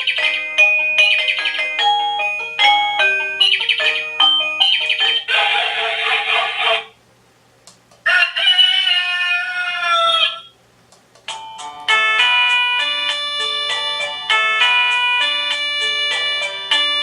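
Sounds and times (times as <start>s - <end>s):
chiming melody: 0.0s - 5.3s, 11.4s - 17.0s
recorded rooster crow: 8.0s - 10.6s.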